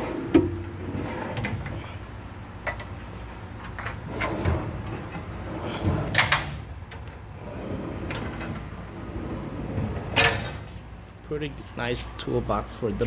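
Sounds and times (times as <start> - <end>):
tool box drawers sliding: 0.0 - 3.0, 3.6 - 10.8.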